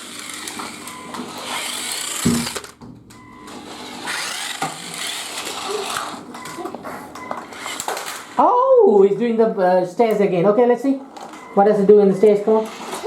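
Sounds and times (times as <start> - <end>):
toy car electric motor whirring: 0.0 - 2.8, 3.5 - 6.2, 7.5 - 8.3, 12.4 - 13.0.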